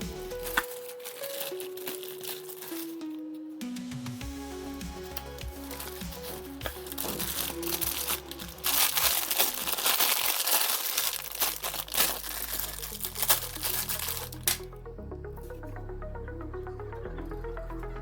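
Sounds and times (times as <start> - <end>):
faint background music: 0.0 - 18.0
plastic packaging crinkling: 0.1 - 3.4, 5.0 - 14.7.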